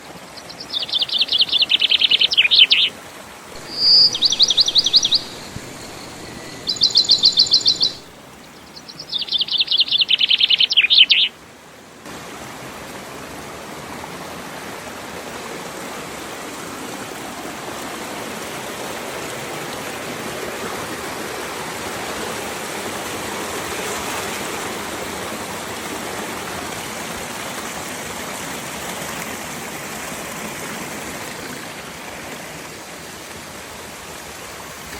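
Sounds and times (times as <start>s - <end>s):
bird singing high notes: 0.8s - 2.9s, 3.6s - 8.2s, 9.1s - 11.3s
waterfall rushing: 2.4s - 8.2s.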